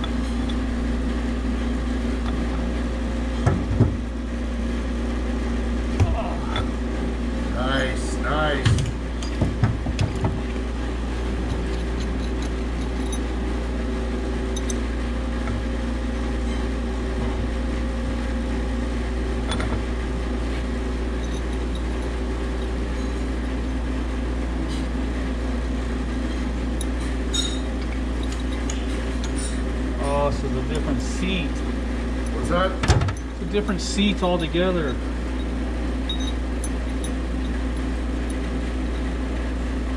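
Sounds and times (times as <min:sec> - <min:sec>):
machinery hum with deep drone: 0:00.0 - 0:39.9
metallic clinks of tools: 0:35.4 - 0:37.6.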